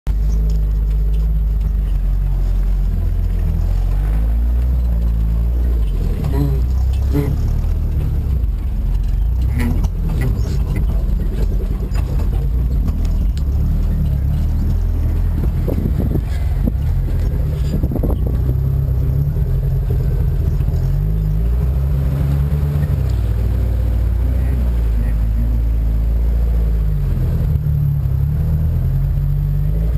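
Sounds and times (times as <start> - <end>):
knocks and rattles: 0.1 - 25.4
off-road vehicle engine revving: 0.1 - 29.9.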